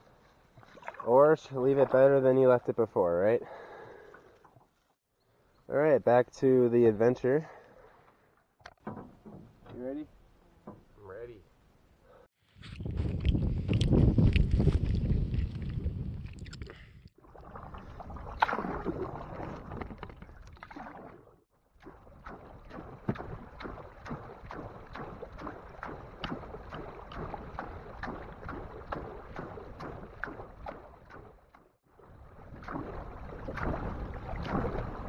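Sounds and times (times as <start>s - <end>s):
water splashing around canoe: 0.0s - 2.7s, 17.2s - 35.0s.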